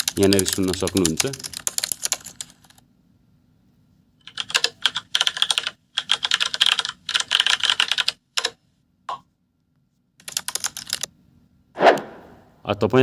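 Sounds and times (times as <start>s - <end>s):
keyboard typing: 0.0s - 2.8s, 4.3s - 8.6s, 10.2s - 11.1s.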